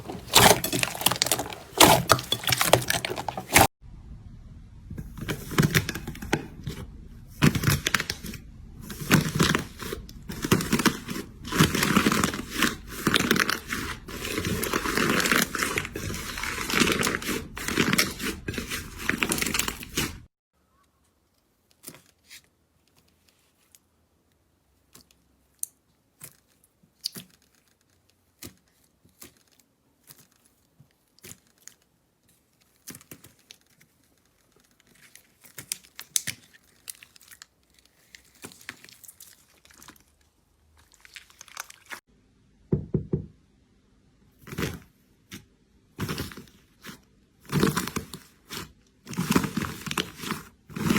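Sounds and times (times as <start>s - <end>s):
slime crackling and popping: 32.6s - 42.0s.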